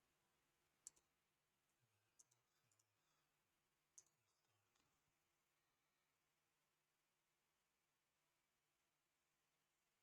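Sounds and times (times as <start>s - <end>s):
computer mouse clicks: 0.8s - 1.1s, 2.1s - 3.0s, 4.0s - 4.9s.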